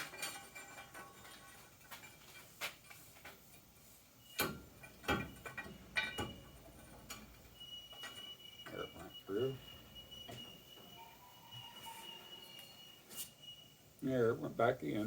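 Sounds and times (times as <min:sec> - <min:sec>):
light metal clicks and knocks: 0:04.4 - 0:08.3.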